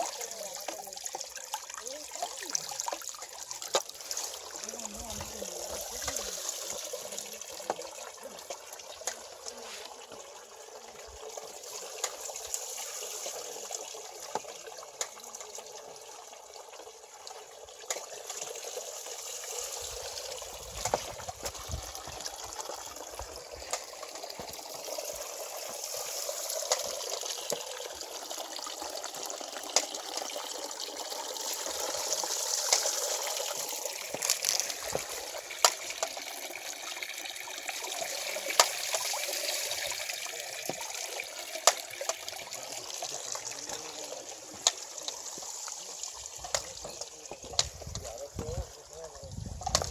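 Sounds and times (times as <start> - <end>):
sharp water splashes and drips: 0.0 - 49.9
water trickling over water wheel: 0.0 - 49.9.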